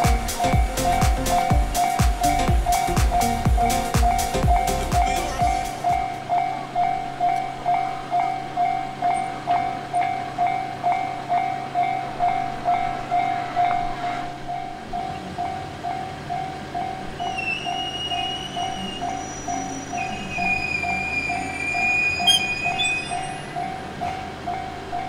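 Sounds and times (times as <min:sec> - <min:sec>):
level-crossing electronic bell: 0:00.0 - 0:13.4, 0:14.4 - 0:25.0
high thin whine: 0:16.8 - 0:24.6.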